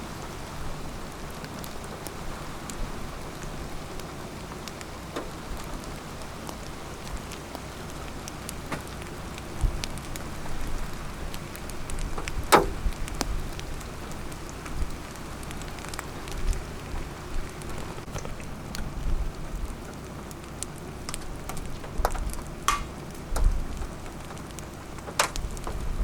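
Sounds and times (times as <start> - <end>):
raindrops clicking: 0.0 - 26.0
steady rain hiss: 0.0 - 26.0
low thump: 12.2 - 13.0.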